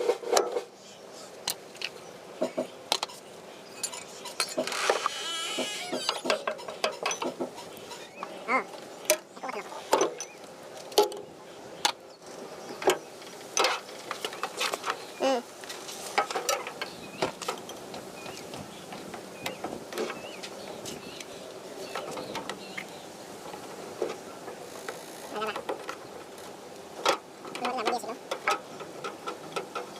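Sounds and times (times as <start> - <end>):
tools and metal parts clicking: 3.8 - 7.4.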